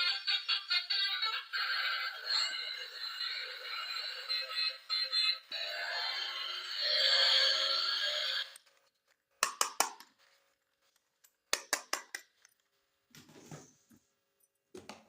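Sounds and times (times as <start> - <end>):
music with synthetic singing: 0.0 - 8.6.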